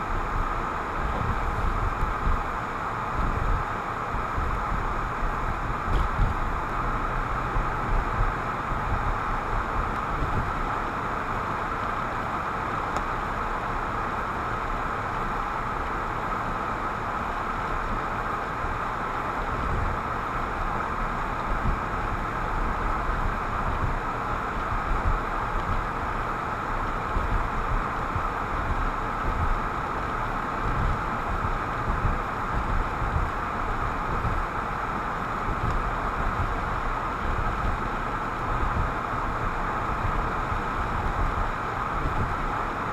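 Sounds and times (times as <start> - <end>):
low bumps from road: 0.0 - 2.5, 3.1 - 12.0
car road and engine noise: 0.0 - 42.9.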